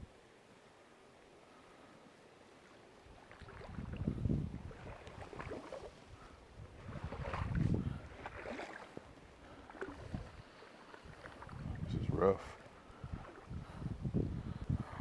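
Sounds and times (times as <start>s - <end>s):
wading through water splashing: 3.1s - 13.8s.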